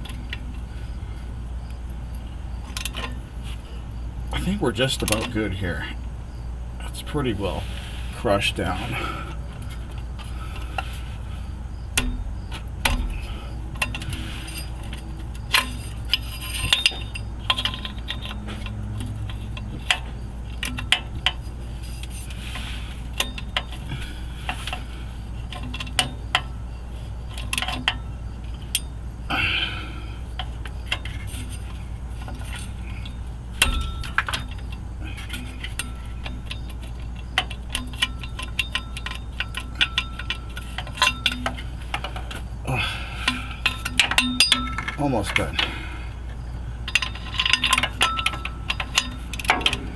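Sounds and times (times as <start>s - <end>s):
steady low hum: 0.0s - 49.9s
tools clinking on metal: 13.8s - 20.0s, 30.9s - 42.4s, 43.3s - 45.7s, 46.8s - 49.9s.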